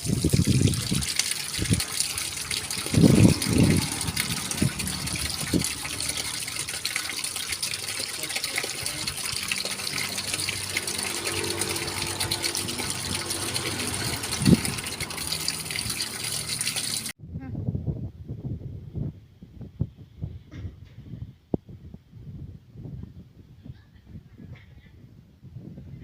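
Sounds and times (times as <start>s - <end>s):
tap water running over hands: 0.0s - 17.2s.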